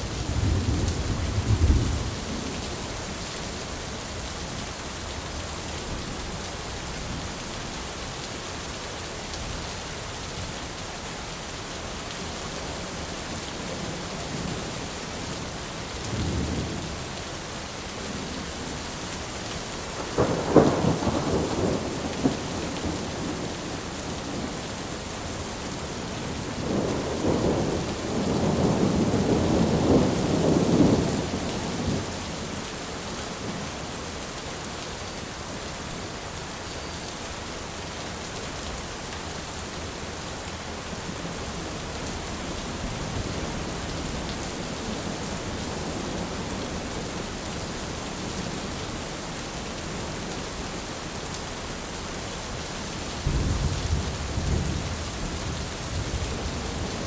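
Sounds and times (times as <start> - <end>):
thunder rumbling: 0.2 - 2.5, 20.0 - 24.7, 26.2 - 32.0, 53.2 - 57.0
rain hissing: 14.5 - 57.0.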